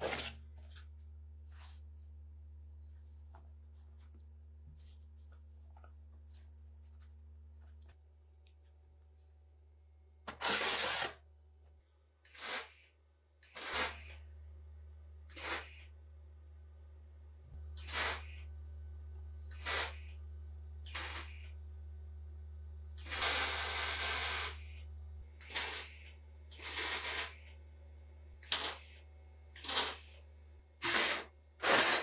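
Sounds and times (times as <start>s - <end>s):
spraying hiss bursts: 12.3s - 12.9s, 13.5s - 14.2s, 15.3s - 15.9s, 17.8s - 18.5s, 19.5s - 20.2s, 20.9s - 21.5s, 23.0s - 24.8s, 25.4s - 27.6s, 28.4s - 29.0s, 29.6s - 30.2s
steady low hum: 14.2s - 31.6s.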